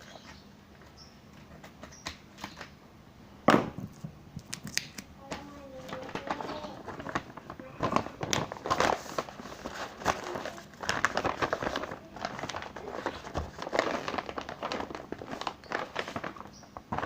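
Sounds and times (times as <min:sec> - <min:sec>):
crinkling and rustling: 0:03.7 - 0:17.0.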